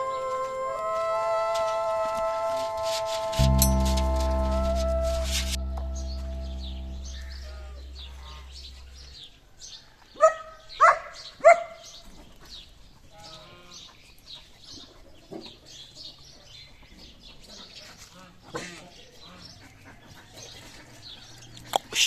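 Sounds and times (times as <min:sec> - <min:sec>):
background music: 0:03.4 - 0:08.9.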